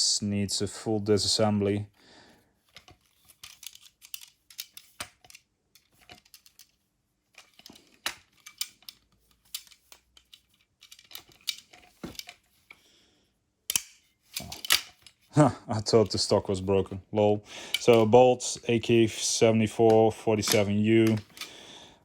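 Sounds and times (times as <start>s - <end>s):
toy rifle parts clicking and knocking: 2.6s - 12.9s, 13.7s - 15.3s, 17.6s - 21.6s.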